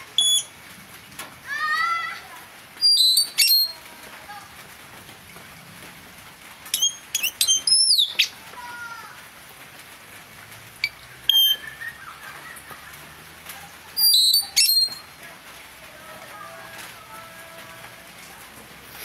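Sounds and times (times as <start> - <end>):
parrot shrill calls: 0.0 - 0.5, 2.8 - 3.8, 6.7 - 8.4, 10.8 - 12.1, 14.0 - 15.0.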